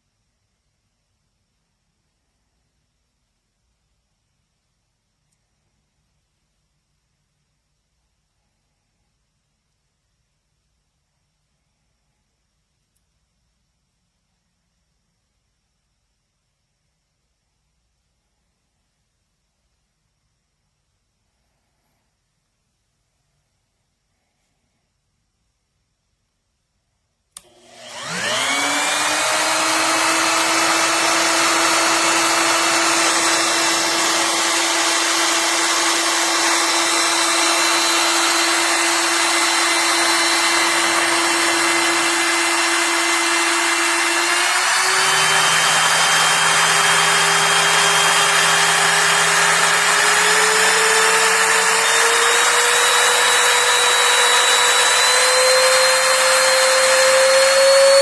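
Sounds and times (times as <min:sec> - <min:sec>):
wood router motor whining: 0:27.4 - 0:58.0.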